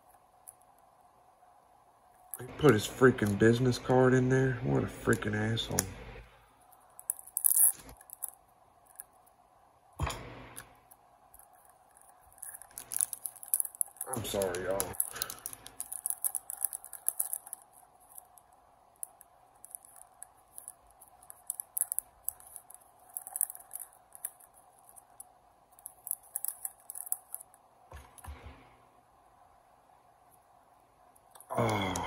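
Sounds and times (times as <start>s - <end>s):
packaging rustling: 11.4s - 28.4s.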